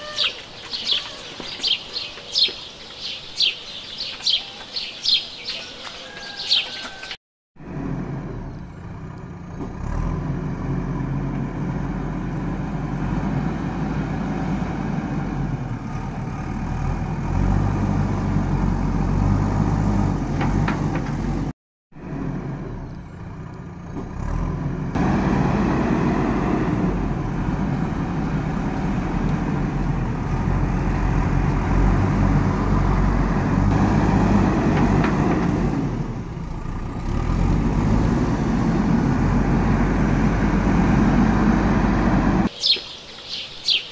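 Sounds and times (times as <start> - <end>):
heavy vehicle engine running: 7.6 - 42.5.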